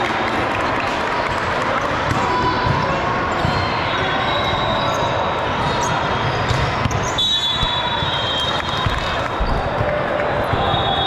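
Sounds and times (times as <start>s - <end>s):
din of crowd and players: 0.0s - 11.0s
basketball bouncing on court: 5.6s - 10.9s.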